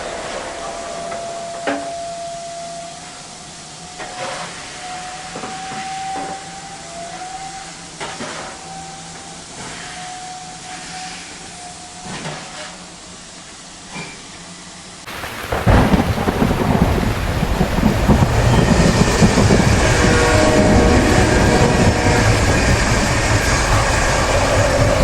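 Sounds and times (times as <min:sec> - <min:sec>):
thin steady high tones: 0:00.0 - 0:08.0, 0:18.2 - 0:25.0
train rumbling past: 0:00.0 - 0:25.0.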